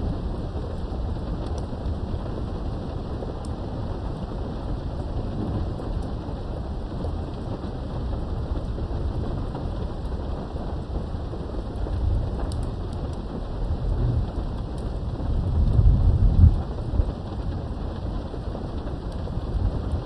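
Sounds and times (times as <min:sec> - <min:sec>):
low rumble of thunder: 0:00.0 - 0:20.0
steady rain: 0:00.0 - 0:20.0
raindrops ticking: 0:05.2 - 0:20.0.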